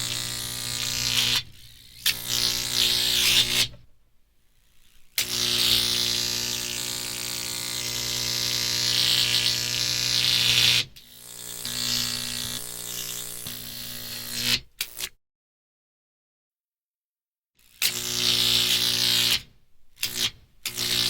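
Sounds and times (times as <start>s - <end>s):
electric arc buzzing and crackling: 0.0s - 3.8s, 4.8s - 15.1s, 17.8s - 19.4s, 20.0s - 21.0s.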